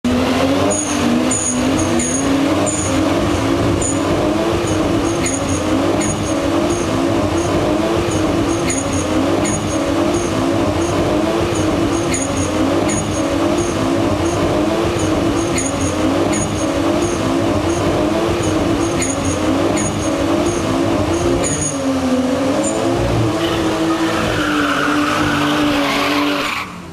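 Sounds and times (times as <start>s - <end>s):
car engine at high revs: 0.0s - 26.9s
tyres spinning on pavement: 23.0s - 26.9s.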